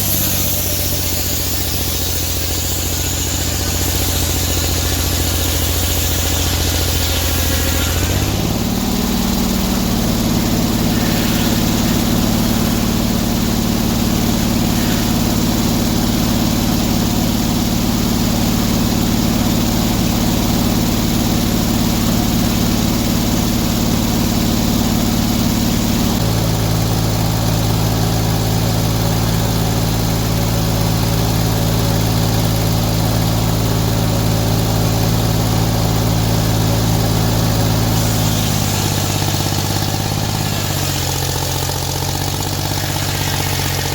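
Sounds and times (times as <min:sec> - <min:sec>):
sawmill engine running: 0:00.0 - 0:43.9.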